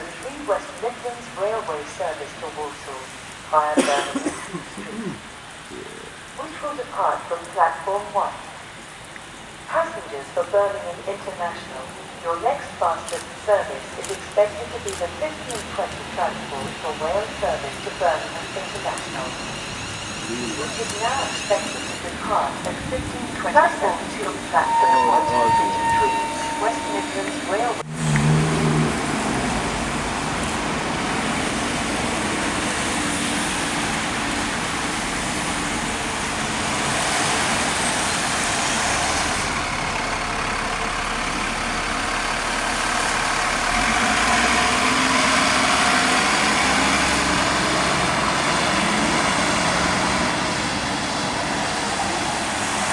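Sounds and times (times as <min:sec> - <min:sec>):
traffic noise: 0:00.0 - 0:52.9
large vehicle engine running: 0:13.1 - 0:52.9.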